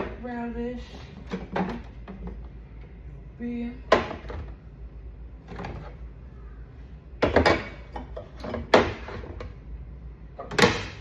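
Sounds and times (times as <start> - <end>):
containers knocking and clattering: 1.0 - 2.6, 7.2 - 9.6.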